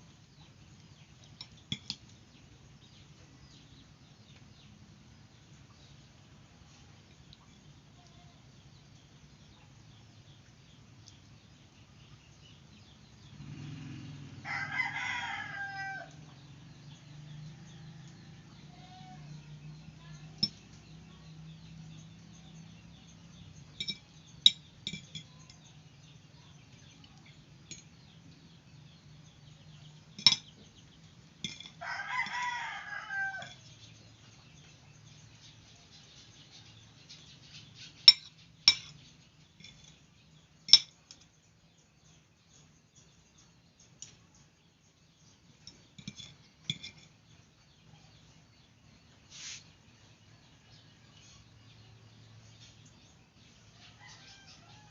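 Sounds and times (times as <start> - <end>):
rooster crowing: 14.4 - 16.4, 31.8 - 33.6, 53.8 - 54.9
sharp clinks: 20.1 - 20.9, 22.4 - 25.9, 26.8 - 28.2, 30.0 - 30.8, 31.4 - 32.4, 38.0 - 39.0, 39.6 - 41.4, 45.6 - 47.2.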